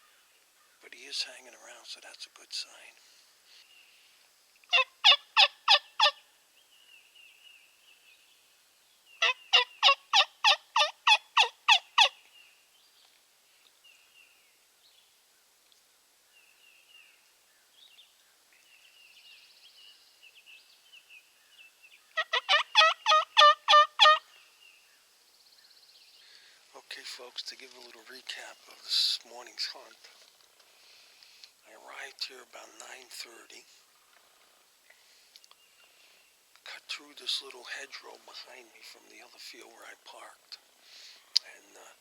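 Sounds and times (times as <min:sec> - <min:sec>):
faint songbird chirps: 0:00.0 - 0:28.9, 0:29.6 - 0:42.0
turkey call yelps: 0:04.7 - 0:06.2, 0:09.2 - 0:12.2, 0:22.2 - 0:24.3.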